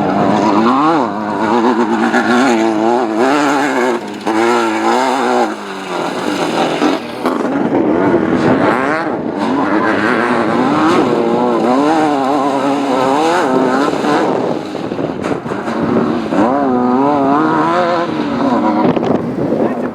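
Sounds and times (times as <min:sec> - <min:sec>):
race car engine revving: 0:00.0 - 0:19.9.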